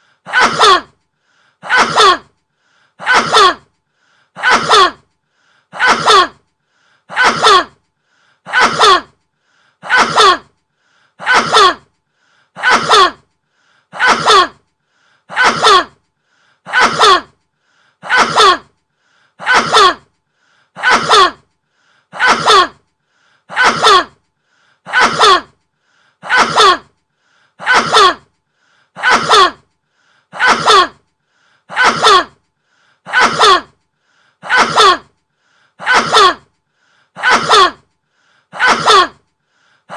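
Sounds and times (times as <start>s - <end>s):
man sneezing: 0.3s - 0.9s, 1.6s - 2.3s, 3.0s - 3.6s, 4.4s - 5.0s, 5.8s - 6.4s, 7.1s - 7.7s, 8.5s - 9.1s, 9.8s - 10.5s, 11.2s - 11.8s, 12.6s - 13.2s, 14.0s - 14.6s, 15.3s - 15.9s, 16.7s - 17.3s, 18.0s - 18.7s, 19.4s - 20.0s, 20.8s - 21.4s, 22.2s - 22.8s, 23.5s - 24.1s, 24.9s - 25.6s, 26.2s - 26.9s, 27.6s - 28.2s, 29.0s - 29.6s, 30.4s - 31.0s, 31.7s - 32.3s, 33.1s - 33.8s, 34.4s - 35.1s, 35.8s - 36.5s, 37.2s - 37.8s, 38.6s - 39.2s.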